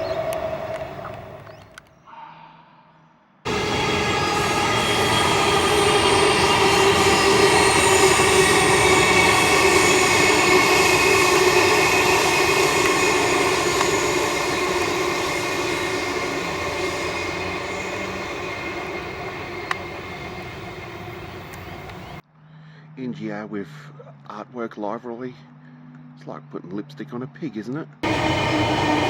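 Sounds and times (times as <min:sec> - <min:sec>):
train rumbling past: 0:00.0 - 0:01.8, 0:03.5 - 0:22.2, 0:28.0 - 0:29.0
train whining tones: 0:00.0 - 0:02.4, 0:03.5 - 0:22.2, 0:28.0 - 0:29.0.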